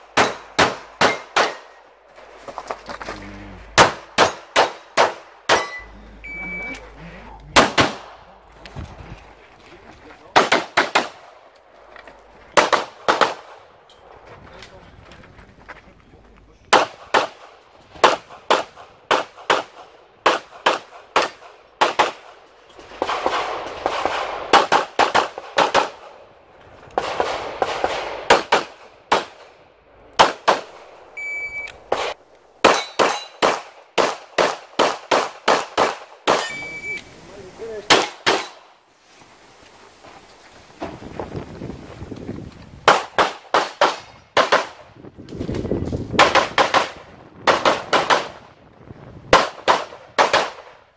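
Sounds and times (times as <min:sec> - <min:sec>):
short ringing tone: 0:05.6 - 0:06.8, 0:31.2 - 0:31.7, 0:36.4 - 0:37.0
rapid pistol fire: 0:07.6 - 0:08.2, 0:49.3 - 0:50.7.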